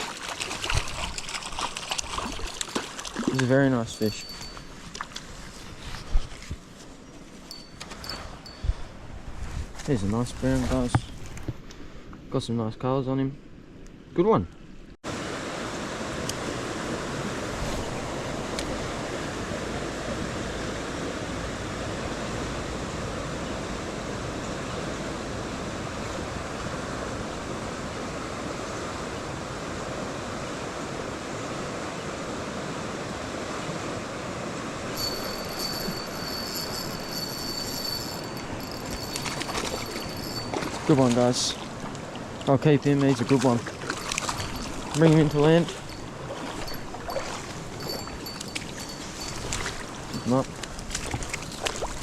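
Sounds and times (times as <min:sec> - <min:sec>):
river water rushing: 0:00.0 - 0:05.5, 0:34.8 - 0:52.0
faint high whine with ticking: 0:35.0 - 0:40.8.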